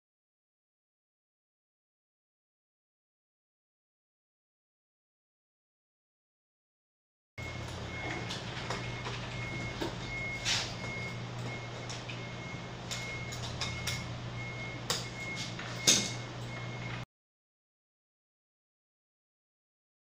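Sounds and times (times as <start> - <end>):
printer beeping: 7.4 - 17.0
steady low hum: 7.4 - 17.0.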